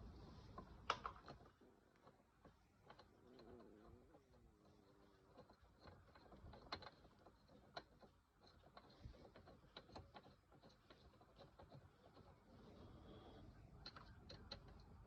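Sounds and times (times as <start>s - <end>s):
faint metallic clicks and ticks: 0.0s - 15.0s.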